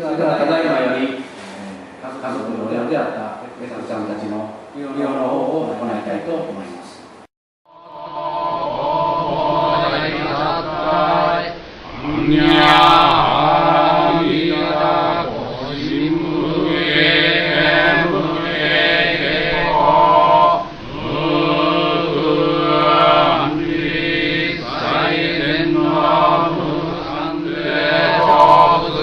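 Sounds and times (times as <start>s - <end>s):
low monotone chanting: 7.7s - 29.0s.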